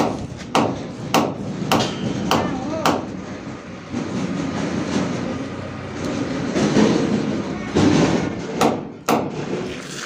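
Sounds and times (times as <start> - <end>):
hammer blows ringing: 0.0 - 3.1
rough working noise: 0.0 - 10.0.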